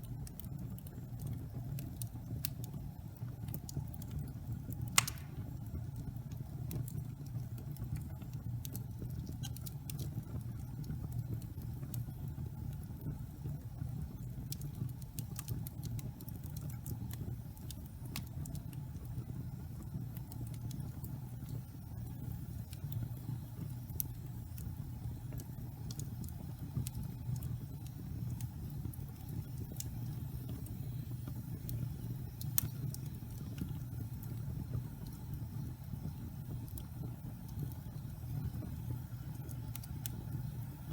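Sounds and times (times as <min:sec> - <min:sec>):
fire crackling and popping: 0:00.0 - 0:40.9
fire flames rumbling: 0:00.0 - 0:40.9.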